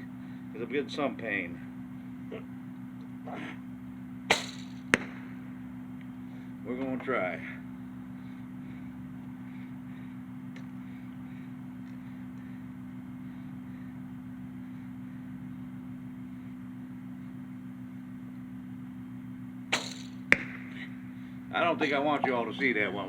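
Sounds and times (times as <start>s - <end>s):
steady low hum: 0.0s - 23.0s
bow string snap: 19.8s - 20.7s.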